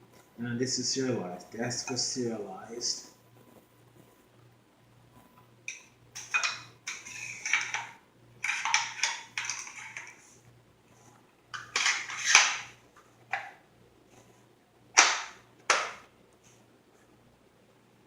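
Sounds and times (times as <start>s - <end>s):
rifle parts clacking and clicking: 5.7s - 10.2s.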